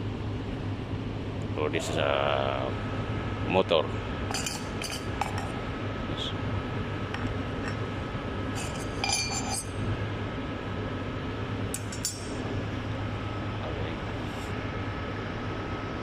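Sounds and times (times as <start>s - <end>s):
machine-shop hum: 0.0s - 16.0s
metallic clinks and taps: 4.3s - 5.5s, 8.6s - 9.7s, 11.8s - 12.4s.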